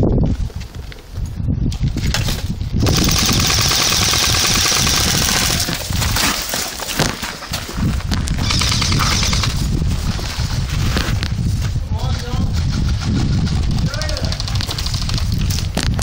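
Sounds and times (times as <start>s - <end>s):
wind rumble on microphone: 0.0s - 16.0s
airsoft guns firing full-auto: 2.8s - 5.8s, 8.4s - 9.6s, 13.9s - 15.4s.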